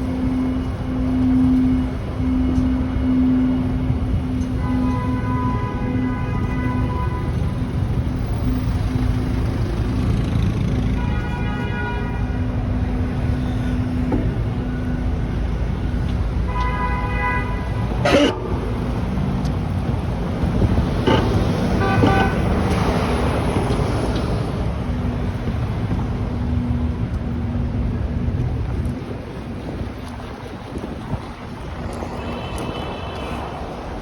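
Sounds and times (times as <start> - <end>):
traffic rumble: 0.0 - 34.0
car horns honking: 16.4 - 23.6.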